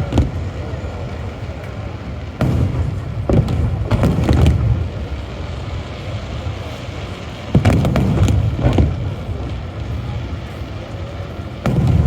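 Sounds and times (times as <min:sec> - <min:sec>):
fireworks booming: 0:00.0 - 0:12.0.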